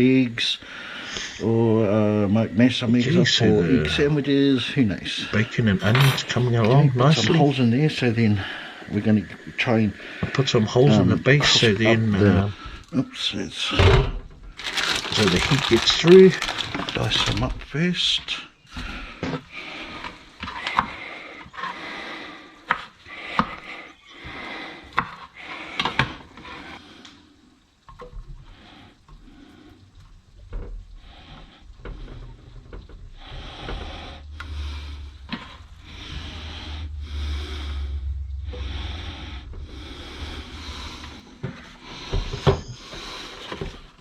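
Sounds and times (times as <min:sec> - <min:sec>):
low rumble: 0:30.4 - 0:44.0.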